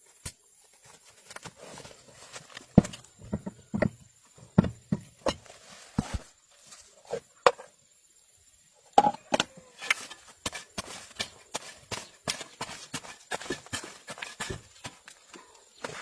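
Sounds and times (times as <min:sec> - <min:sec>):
sharp irregular knocks and taps: 0:02.8 - 0:04.0.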